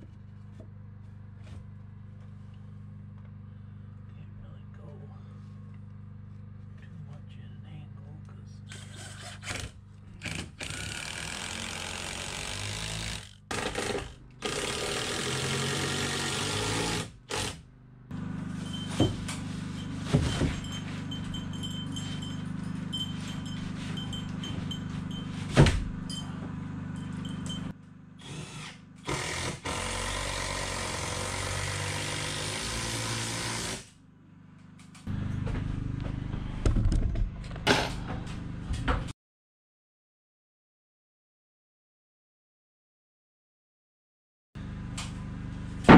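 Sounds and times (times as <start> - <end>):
power tool running: 8.7 - 34.0, 35.1 - 36.7.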